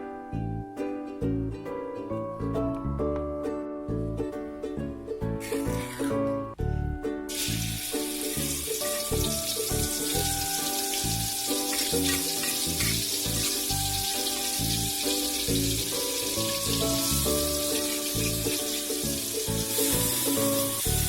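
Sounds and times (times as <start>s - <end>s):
food sizzling in hot oil: 7.3s - 21.0s.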